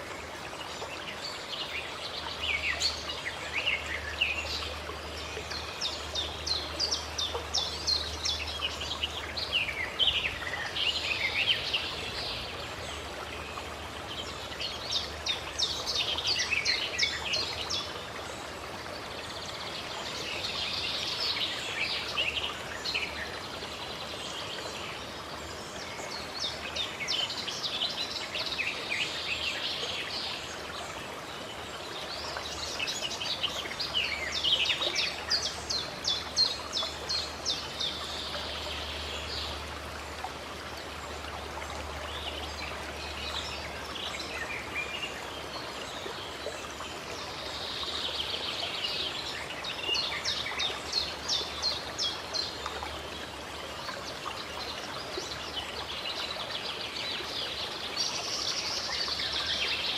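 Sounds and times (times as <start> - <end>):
songbirds chirping: 0.0 - 59.9
stream water running: 0.0 - 59.9.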